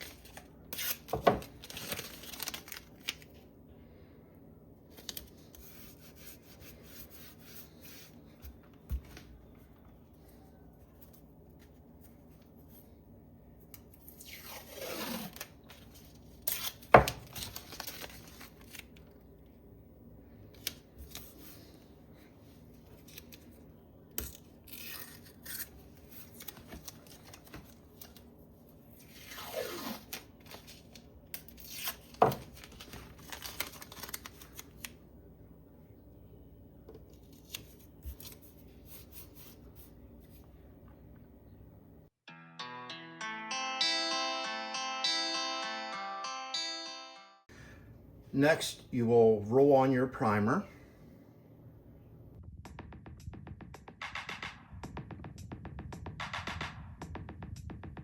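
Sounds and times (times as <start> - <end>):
tape crinkling: 0.0 - 3.4, 14.0 - 19.2, 24.2 - 28.3, 29.0 - 35.0.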